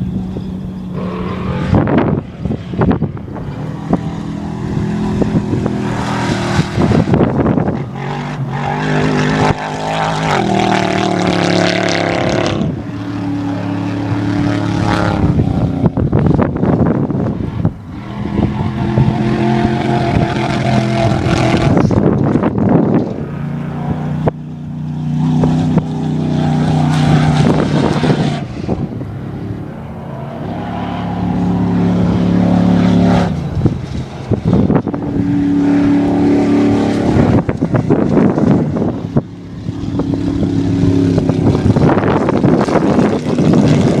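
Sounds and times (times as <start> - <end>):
racing engines revving: 0.0 - 44.0.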